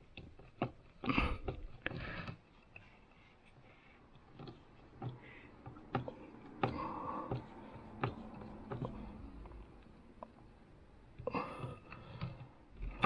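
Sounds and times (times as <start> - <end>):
plastic parts clicking: 4.1 - 10.5.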